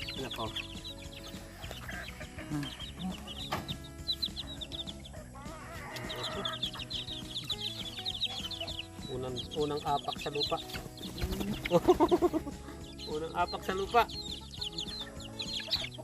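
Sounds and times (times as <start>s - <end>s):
baby chicks peeping: 0.0s - 16.0s
chicken clucking: 0.0s - 16.0s
long chicken call: 5.2s - 6.9s.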